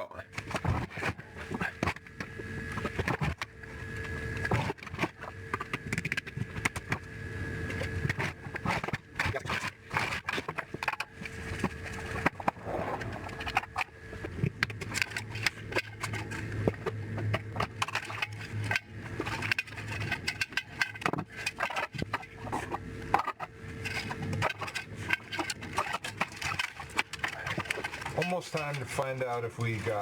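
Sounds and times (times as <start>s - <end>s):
hand tools clicking and scraping parts: 17.6s - 30.0s.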